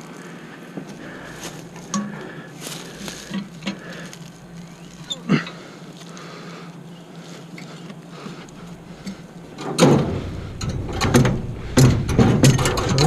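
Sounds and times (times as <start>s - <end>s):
metal parts knocking and clanking: 8.7s - 13.0s.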